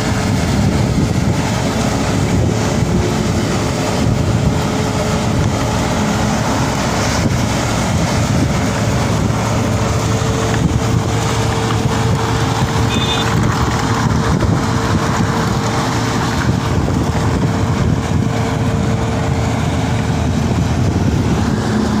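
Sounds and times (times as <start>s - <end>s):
sweeping machine engine drone: 0.0s - 22.0s
short high beep: 12.9s - 13.3s.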